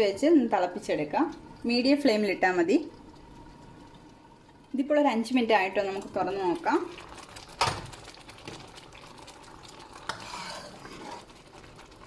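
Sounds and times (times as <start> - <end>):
food bubbling: 0.0 - 12.0
spoon stirring in a pan: 6.8 - 12.0
spoon scraping a pan: 10.0 - 11.4.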